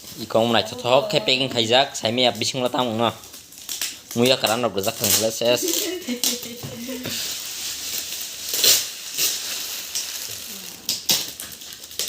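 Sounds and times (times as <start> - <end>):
gift wrapping crinkling: 0.0 - 12.0
paper ripping: 4.9 - 9.4.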